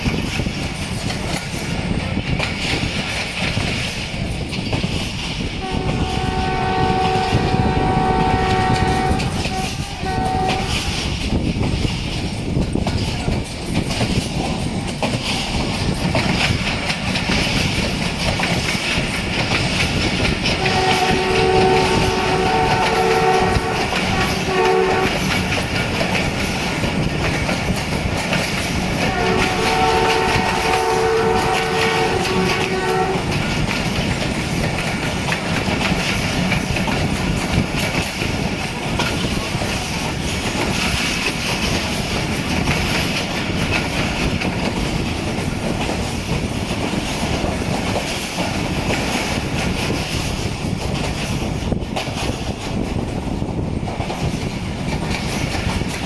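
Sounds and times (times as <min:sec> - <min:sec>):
train rumbling on the track: 0:00.0 - 0:56.0
locomotive horn: 0:05.6 - 0:11.2, 0:20.5 - 0:25.8, 0:28.9 - 0:33.7.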